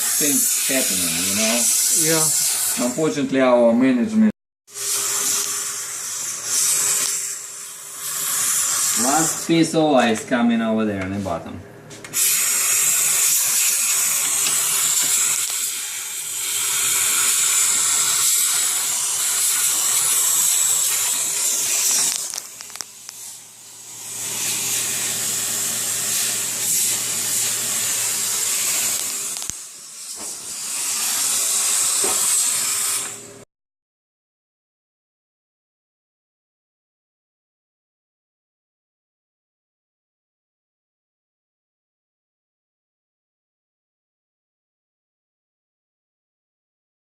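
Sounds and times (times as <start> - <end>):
loud hissing jet: 0.0 - 3.2, 4.7 - 9.8, 12.2 - 33.4.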